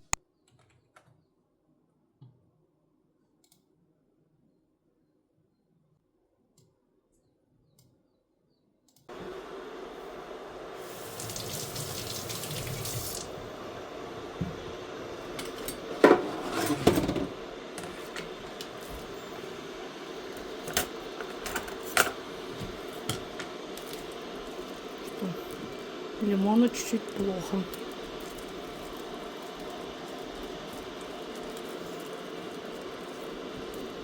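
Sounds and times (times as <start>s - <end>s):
tap water running into sink: 10.8s - 13.5s.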